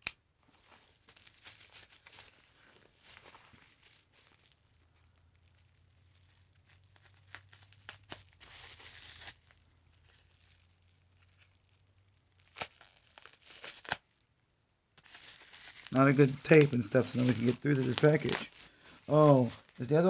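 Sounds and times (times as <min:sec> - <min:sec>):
packing tape tearing: 0:00.0 - 0:04.8, 0:05.5 - 0:11.6, 0:12.3 - 0:14.2, 0:15.0 - 0:20.0
wrapping crinkling: 0:00.0 - 0:20.0.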